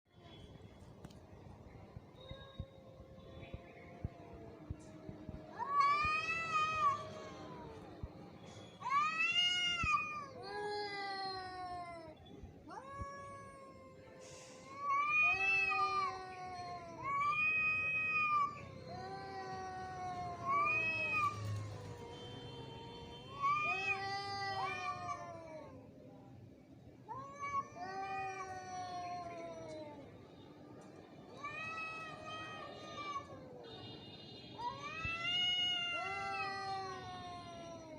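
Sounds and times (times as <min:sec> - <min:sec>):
angry cat yowling: 0:04.1 - 0:08.1, 0:34.7 - 0:37.9.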